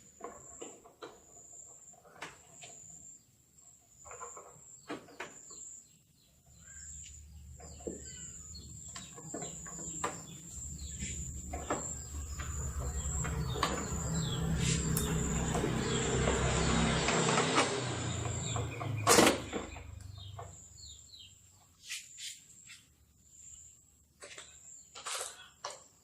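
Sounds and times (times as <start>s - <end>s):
birds chirping: 4.0s - 25.6s
low motor rumble: 6.6s - 21.3s
steady high whine: 8.1s - 20.9s.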